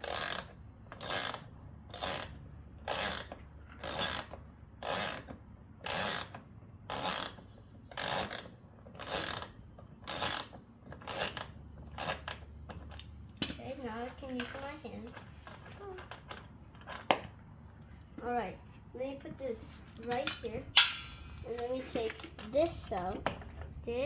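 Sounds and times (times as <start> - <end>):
ratchet wrench clicking: 0.0 - 13.1.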